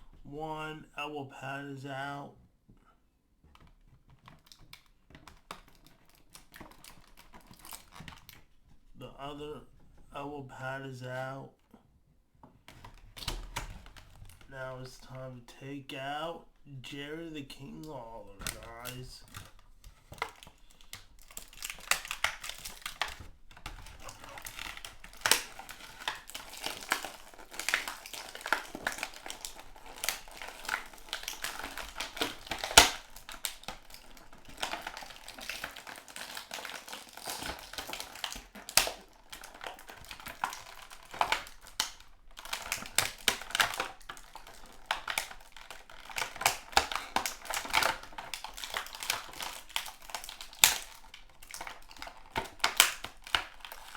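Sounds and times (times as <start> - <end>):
plastic packaging snapping: 3.6 - 8.5, 12.7 - 14.5, 18.3 - 53.9
packaging crinkling and clicking: 3.6 - 8.8, 12.6 - 14.5, 17.8 - 53.9.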